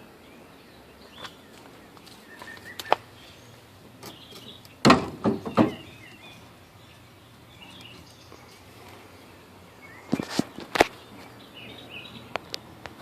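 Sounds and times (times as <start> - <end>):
birds chirping faintly: 0.0 - 13.0
sharp knocks: 4.8 - 5.9.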